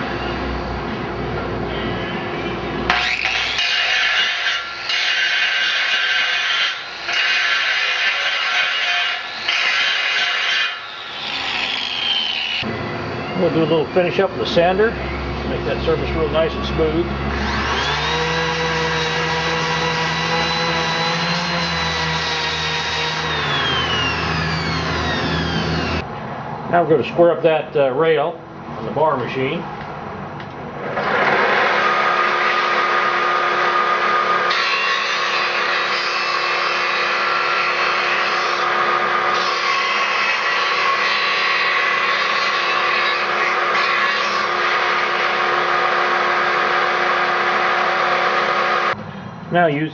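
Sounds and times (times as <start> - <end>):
electric sander whine: 5.8 - 26.0
motor hum: 10.7 - 26.0.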